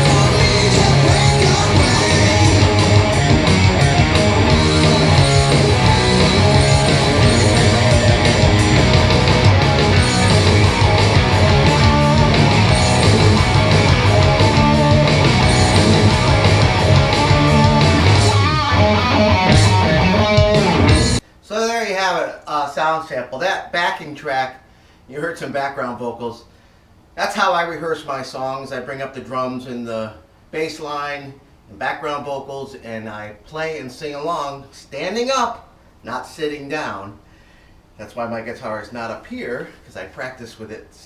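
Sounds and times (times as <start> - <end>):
distorted electric guitar: 0.0 - 21.2
rock backing track: 0.0 - 21.2.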